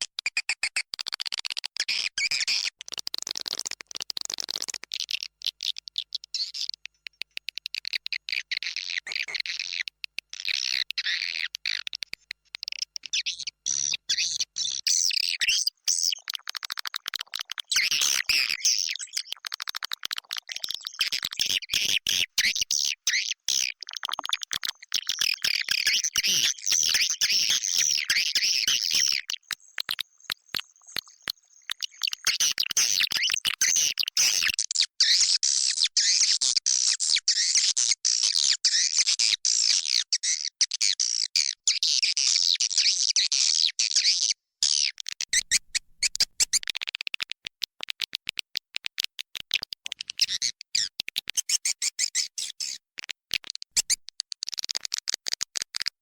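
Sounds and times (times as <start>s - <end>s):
swiftlets chirping and twittering: 20.4s - 34.5s.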